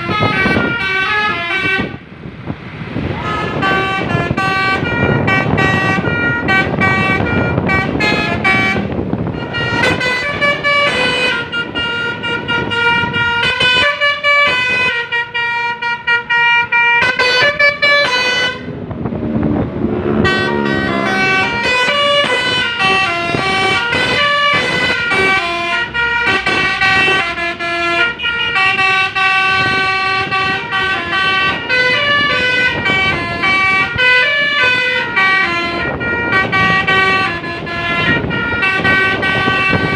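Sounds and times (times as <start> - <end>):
musical air horn tunes: 19.8 - 39.9.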